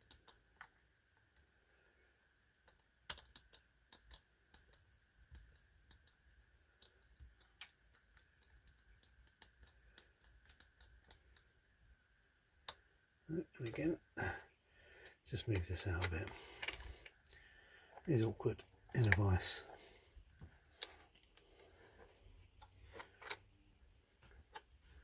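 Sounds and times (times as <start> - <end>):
metallic clicks of lock picking: 2.6 - 11.5.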